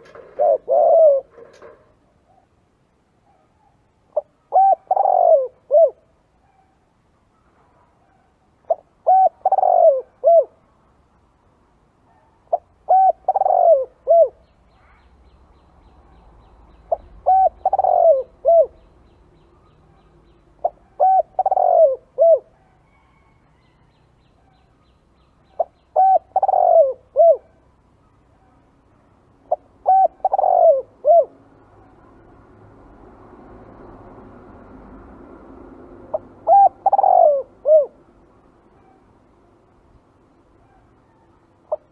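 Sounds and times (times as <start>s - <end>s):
dove cooing: 0.0s - 2.4s, 4.1s - 6.1s, 8.7s - 10.6s, 12.5s - 14.4s, 16.9s - 18.8s, 20.6s - 23.4s, 25.6s - 27.6s, 29.4s - 31.4s, 36.1s - 38.1s, 40.7s - 41.9s.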